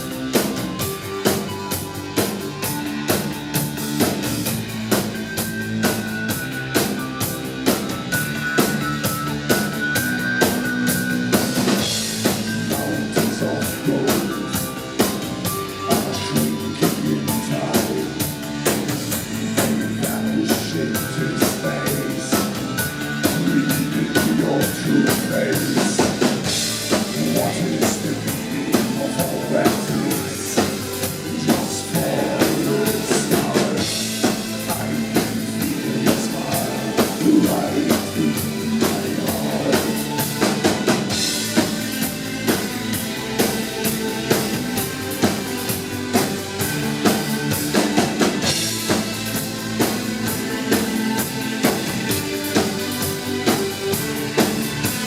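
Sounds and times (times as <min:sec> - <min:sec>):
driving drum beat: 0:00.0 - 0:55.0
live band music: 0:00.0 - 0:55.0
sustained synthesizer lines: 0:10.8 - 0:42.3.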